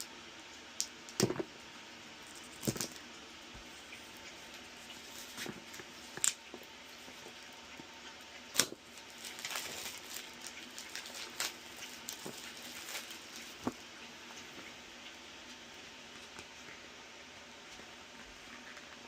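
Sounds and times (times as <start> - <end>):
cardboard and plastic rustling: 4.9 - 7.4, 8.6 - 14.7.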